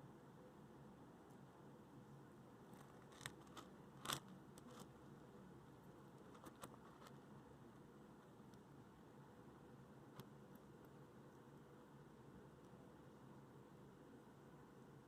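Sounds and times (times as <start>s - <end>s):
hedgehog clicks and scratches: 2.7s - 5.0s, 6.2s - 7.3s.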